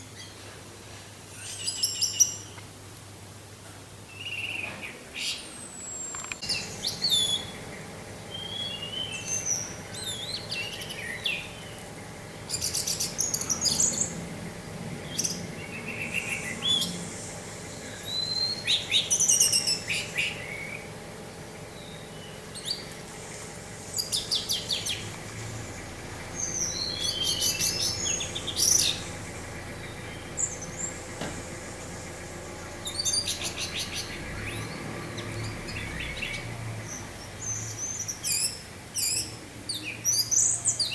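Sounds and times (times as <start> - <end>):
thrush singing: 6.4 - 38.5.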